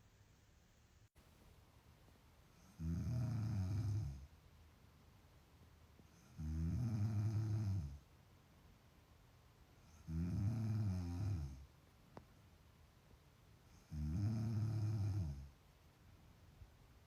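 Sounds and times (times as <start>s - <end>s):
heavy snoring: 2.6s - 4.3s, 6.3s - 8.0s, 9.9s - 11.6s, 13.9s - 15.5s.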